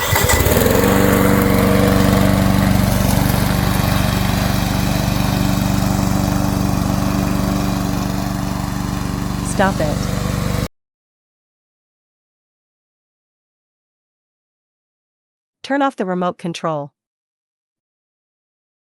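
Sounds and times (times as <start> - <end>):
lawn mower engine starting and running: 0.0 - 10.7.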